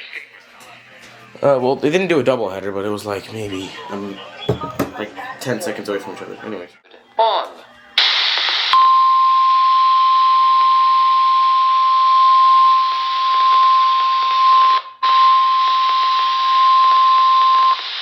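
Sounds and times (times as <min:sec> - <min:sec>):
static hiss: 0:08.0 - 0:08.8.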